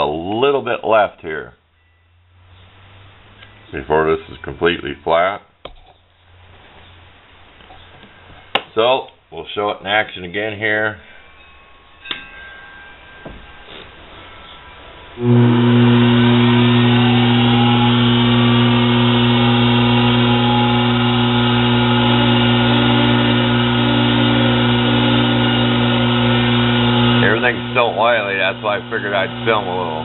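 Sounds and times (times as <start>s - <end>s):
lathe motor whine and hum: 15.2s - 30.0s.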